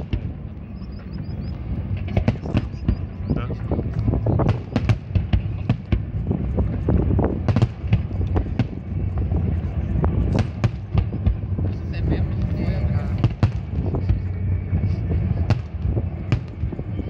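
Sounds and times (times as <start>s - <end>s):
fireworks bangs and crackles: 0.0s - 17.0s
low rumble: 0.0s - 17.0s.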